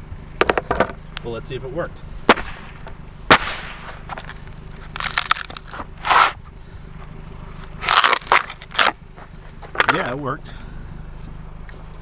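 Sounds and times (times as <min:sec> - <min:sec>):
wooden board cracking apart: 0:03.3 - 0:05.9, 0:07.8 - 0:09.0.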